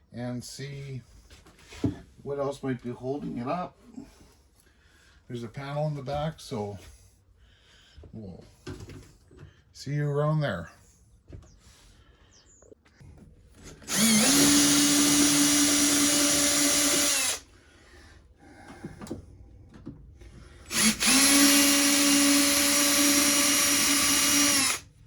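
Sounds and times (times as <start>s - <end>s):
power drill whining: 13.6s - 17.5s, 20.2s - 25.0s.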